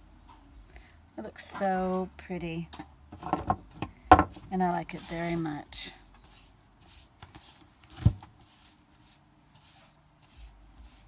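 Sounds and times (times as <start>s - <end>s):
scratchy rubbing strokes: 4.6s - 5.6s, 6.2s - 11.0s.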